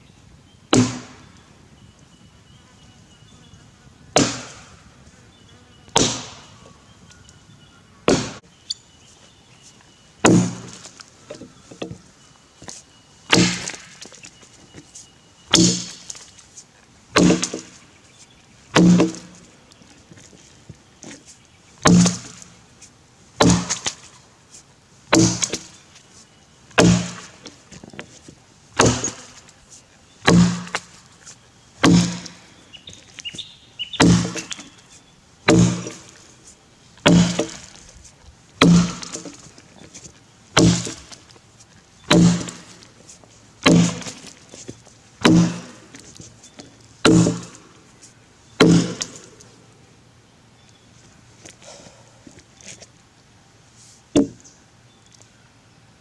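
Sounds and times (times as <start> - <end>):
axe chopping into log: 0.7 - 1.2, 4.2 - 4.7, 6.0 - 6.5, 8.1 - 8.4, 10.2 - 11.8, 13.3 - 14.1, 15.5 - 16.1, 17.2 - 17.7, 18.7 - 19.4, 21.8 - 22.4, 23.4 - 24.0, 25.1 - 25.7, 26.8 - 27.4, 28.8 - 29.4, 30.2 - 30.9, 31.8 - 32.4, 33.9 - 34.7, 35.5 - 36.2, 37.0 - 37.8, 38.6 - 39.5, 40.6 - 41.2, 42.1 - 42.8, 43.6 - 44.3, 45.2 - 46.0, 47.0 - 47.6, 48.6 - 49.4, 54.2 - 54.4.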